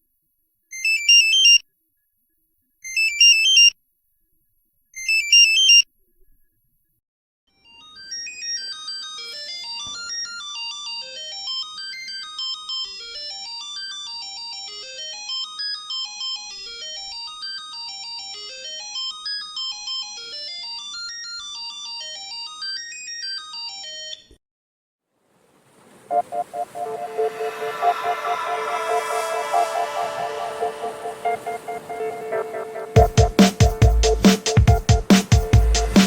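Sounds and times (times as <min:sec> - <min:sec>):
phone ringtone melody: 0:07.8 - 0:20.9, 0:26.1 - 0:36.0.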